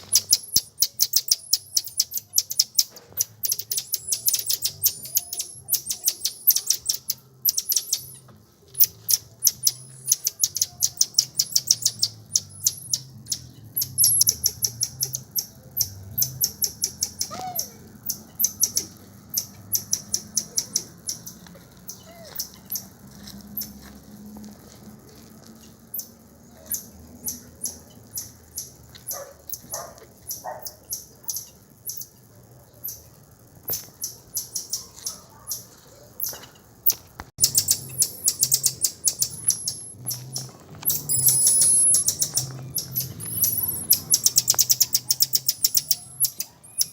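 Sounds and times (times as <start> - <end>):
birds chirping: 0.0 - 23.0, 33.8 - 46.9.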